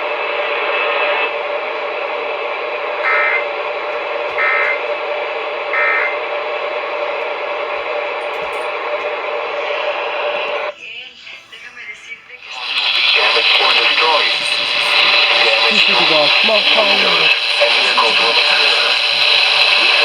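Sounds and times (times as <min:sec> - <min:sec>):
radio static with tone: 0:00.0 - 0:20.0
buzzy data bursts: 0:12.5 - 0:20.0.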